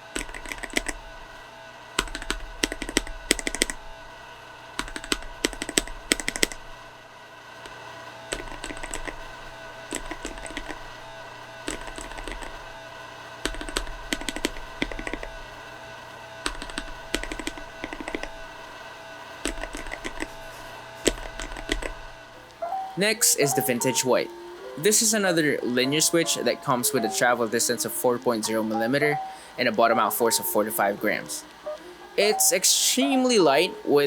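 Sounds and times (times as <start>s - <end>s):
mechanical keyboard typing: 0.0s - 1.3s, 2.0s - 3.9s, 4.8s - 6.7s, 8.3s - 12.7s, 13.4s - 15.5s, 16.4s - 18.6s, 19.4s - 24.2s.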